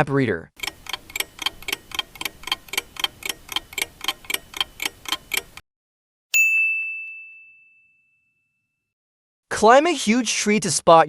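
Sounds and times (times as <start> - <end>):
clock ticking fast: 0.6 - 5.6
bell ding: 6.4 - 8.8.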